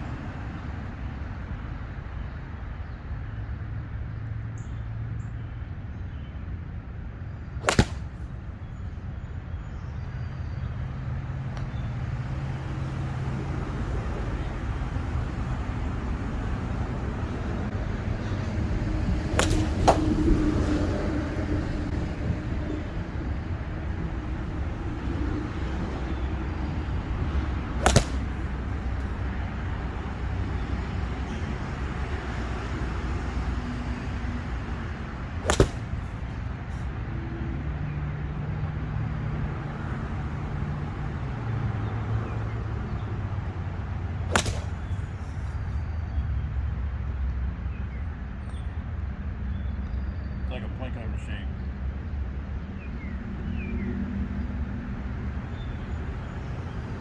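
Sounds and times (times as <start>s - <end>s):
golf club striking a ball: 7.6s - 8.4s, 18.2s - 22.2s, 23.7s - 32.7s, 33.4s - 36.9s, 44.3s - 45.7s.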